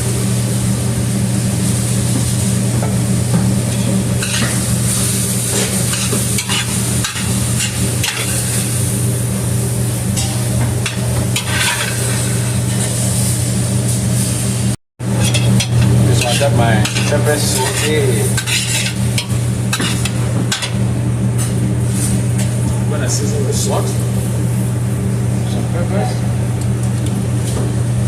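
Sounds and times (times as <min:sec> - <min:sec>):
steady low hum: 0:00.0 - 0:28.0
vegetables sizzling in a frying pan: 0:01.4 - 0:20.8
utensil scraping a pan: 0:04.2 - 0:08.7, 0:10.2 - 0:13.0, 0:15.1 - 0:20.7.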